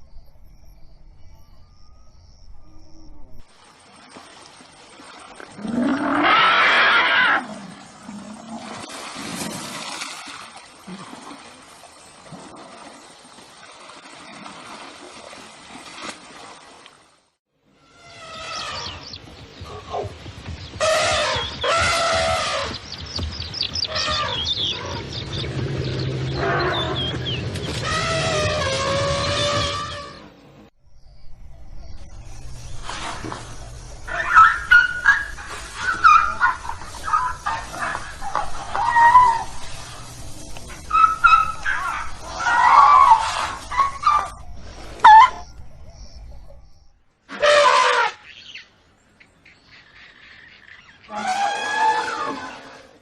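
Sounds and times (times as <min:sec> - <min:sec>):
elephant trumpeting: 0:05.6 - 0:07.6, 0:20.8 - 0:22.8, 0:23.9 - 0:25.1, 0:26.2 - 0:30.3, 0:34.1 - 0:40.0, 0:40.9 - 0:44.4, 0:47.3 - 0:48.3, 0:51.0 - 0:53.0
birds chirping: 0:18.0 - 0:47.1, 0:48.2 - 0:51.4.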